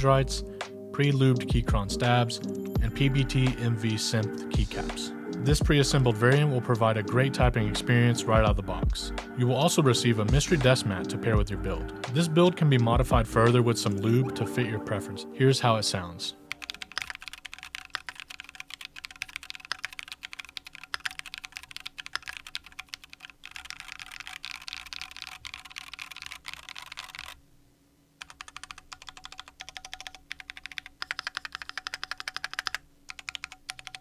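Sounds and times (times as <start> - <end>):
fast typing on mechanical keyboard: 16.5 - 27.4, 28.2 - 34.0.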